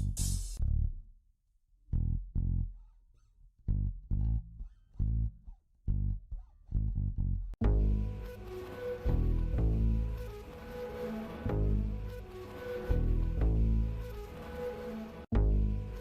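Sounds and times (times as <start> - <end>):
plucked bass line: 0.0 - 1.0, 1.9 - 2.9, 3.6 - 8.3, 15.3 - 16.0.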